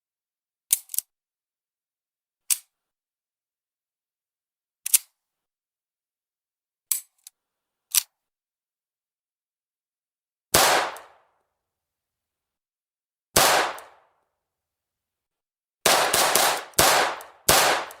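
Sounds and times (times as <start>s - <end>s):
pistol shots with ringing tail: 10.6s - 11.2s, 13.4s - 14.1s, 15.9s - 18.0s.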